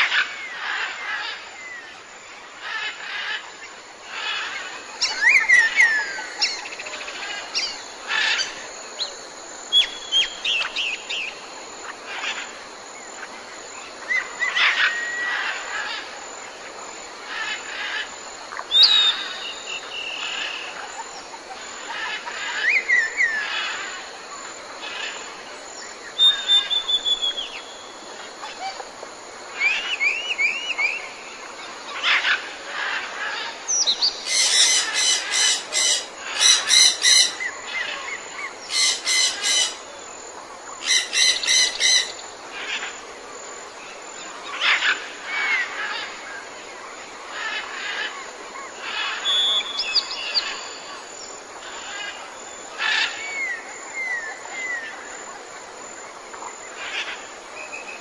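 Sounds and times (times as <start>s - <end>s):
birds chirping and whistling: 26.2s - 27.8s, 49.2s - 50.7s
rapid rattling bird call: 32.0s - 38.0s.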